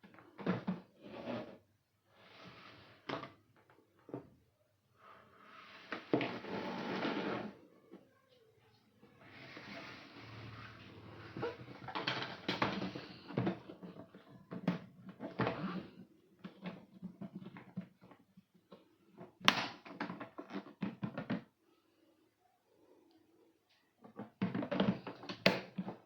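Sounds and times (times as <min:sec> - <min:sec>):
objects being handled: 0:05.6 - 0:21.6.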